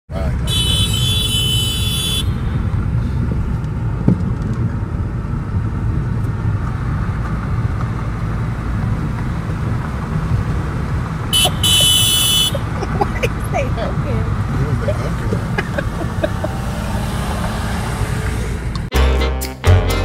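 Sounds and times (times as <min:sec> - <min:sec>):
car rumble on road: 0:00.1 - 0:18.9
shrill horn-like beep: 0:00.5 - 0:02.4, 0:11.4 - 0:12.6.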